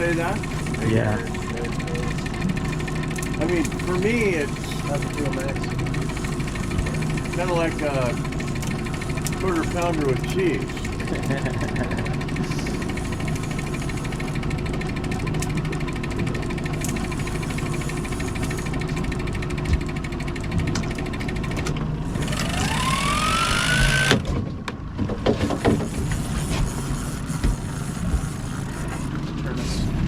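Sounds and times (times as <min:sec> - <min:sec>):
boat engine running: 0:00.0 - 0:30.0
rising whine: 0:22.1 - 0:24.3.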